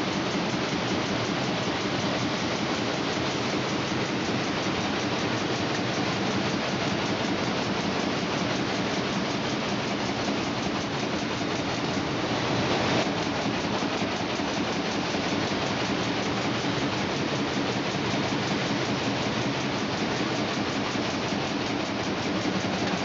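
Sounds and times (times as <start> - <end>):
welding machine clatter: 0.1 - 23.0.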